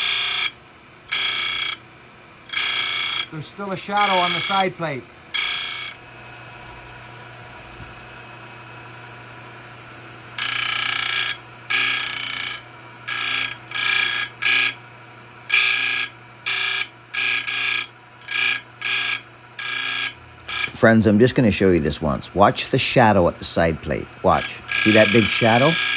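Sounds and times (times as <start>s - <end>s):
file strokes on chainsaw chain: 0.0s - 0.5s, 1.1s - 1.8s, 2.5s - 4.7s, 10.4s - 14.8s, 15.5s - 21.7s, 24.2s - 25.9s
high ringing squeal: 0.0s - 1.8s, 2.4s - 6.0s, 10.4s - 14.8s, 15.5s - 21.6s, 23.9s - 25.9s.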